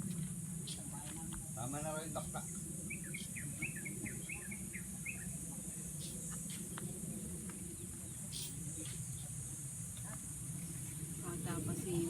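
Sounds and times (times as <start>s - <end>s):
bird chirping: 2.9s - 5.4s.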